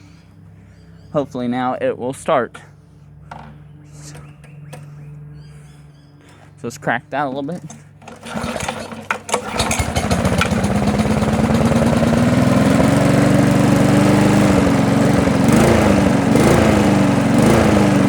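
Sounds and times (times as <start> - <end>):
lawn mower engine running: 7.3 - 18.0.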